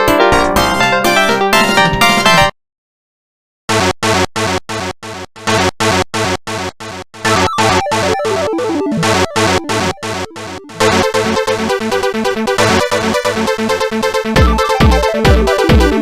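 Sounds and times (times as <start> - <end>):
electronic ringtone synth chords: 7.2 - 16.0.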